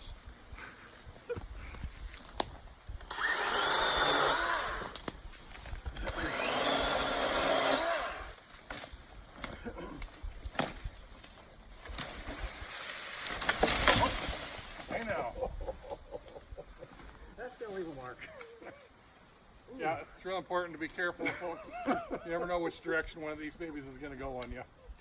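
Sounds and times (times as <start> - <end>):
battery chainsaw cutting brush: 3.1 - 5.1, 5.8 - 8.4.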